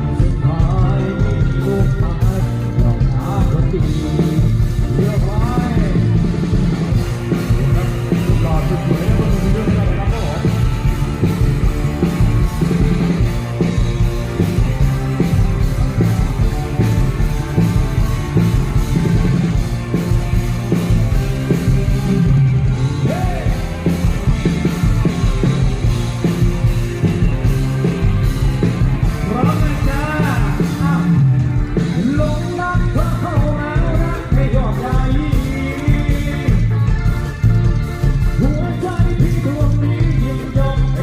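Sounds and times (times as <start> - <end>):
person singing: 0.0 - 10.9, 23.0 - 24.0, 29.0 - 37.0, 38.4 - 41.0
drum and bass beat: 0.0 - 41.0
live band music over loudspeakers: 0.0 - 41.0.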